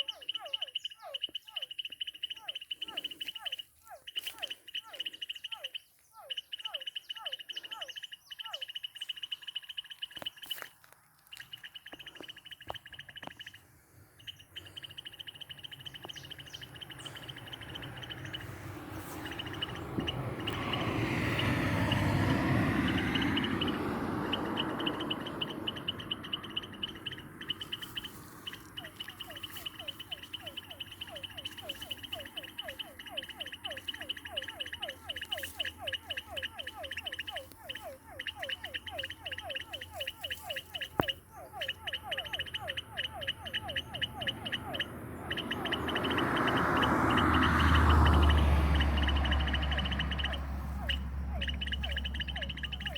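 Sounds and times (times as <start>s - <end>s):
insect pulsing high trill: 22.8s - 52.9s.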